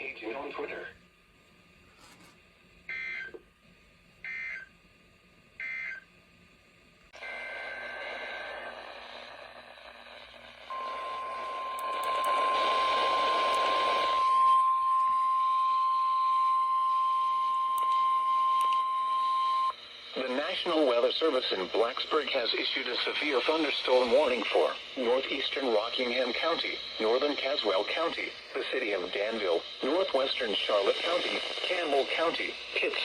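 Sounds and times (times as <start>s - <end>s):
radio hiss: 0.0s - 1.0s, 7.1s - 14.6s, 19.5s - 33.0s
steady warning alarm tone: 2.9s - 3.4s, 4.2s - 4.7s, 5.6s - 6.0s, 7.2s - 19.8s.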